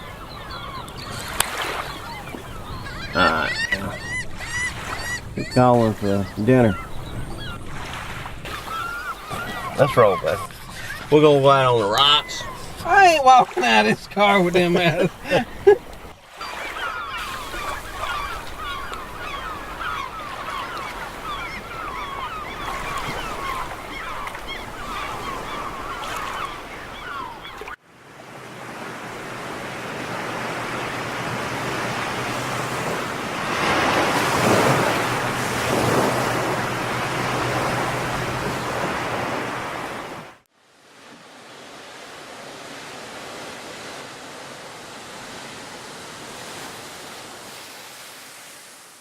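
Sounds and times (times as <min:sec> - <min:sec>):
seagulls calling: 0:00.0 - 0:27.8, 0:28.8 - 0:40.3
surf: 0:00.0 - 0:49.0
wind: 0:00.0 - 0:49.0.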